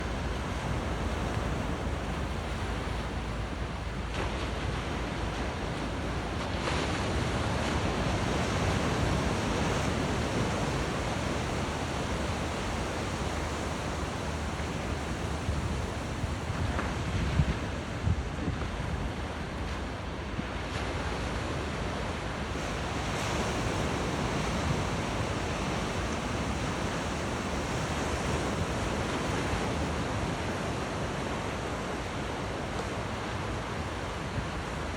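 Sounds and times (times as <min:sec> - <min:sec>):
ocean surf breaking: 0:00.0 - 0:34.9
wind on microphone: 0:04.8 - 0:20.6.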